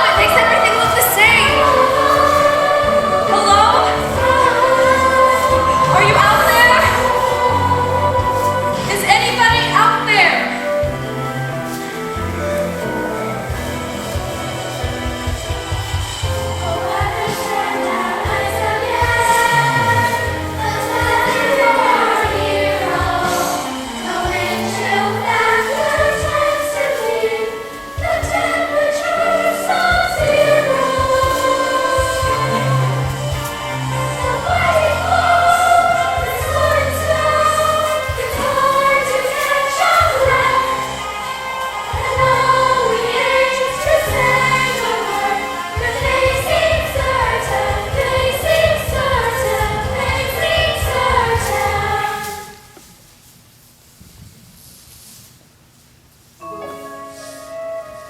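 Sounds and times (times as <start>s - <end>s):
steady low beat: 0.0s - 9.7s, 12.2s - 26.6s, 29.9s - 41.2s, 41.8s - 52.0s
chorus of young voices singing: 0.0s - 52.7s
musical accompaniment: 0.0s - 52.8s, 56.4s - 58.0s.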